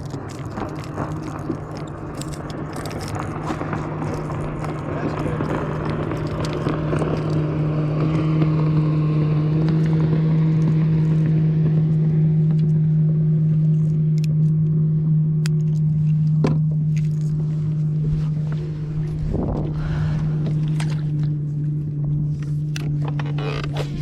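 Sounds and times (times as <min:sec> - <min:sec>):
boat motor humming: 0:00.0 - 0:24.0.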